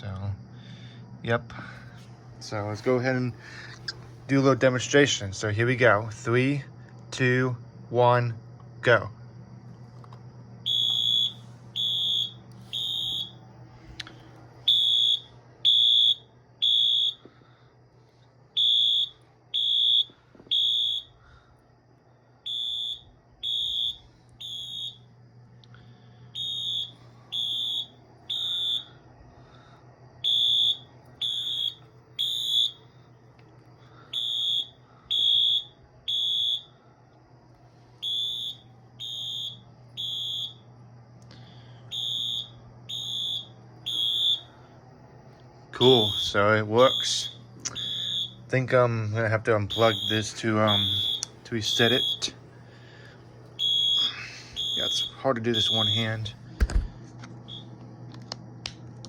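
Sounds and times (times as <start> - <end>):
faint low hum: 0.0 - 59.0
fire alarm horn beeping: 10.6 - 13.4, 14.6 - 17.3, 18.5 - 21.3, 22.4 - 25.1, 26.4 - 29.0, 30.2 - 32.8, 34.1 - 36.8, 38.0 - 40.7, 41.9 - 44.6, 45.8 - 56.4, 57.5 - 57.7.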